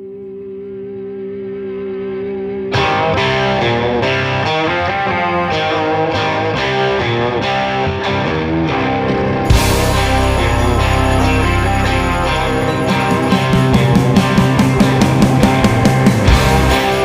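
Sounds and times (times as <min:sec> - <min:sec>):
band with distorted electric guitar: 0:00.0 - 0:17.0
held wavering tone: 0:09.5 - 0:14.7.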